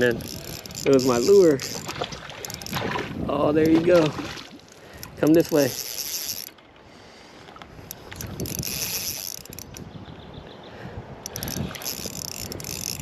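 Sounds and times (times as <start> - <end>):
fishing reel gears whirring and clicking: 0.0 - 2.9, 4.6 - 6.6, 7.8 - 9.9, 11.2 - 13.0.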